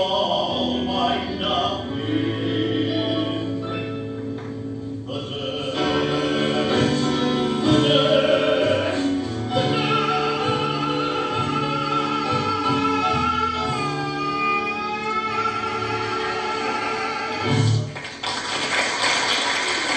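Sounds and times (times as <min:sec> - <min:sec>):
voices singing held notes: 0:05.1 - 0:17.8.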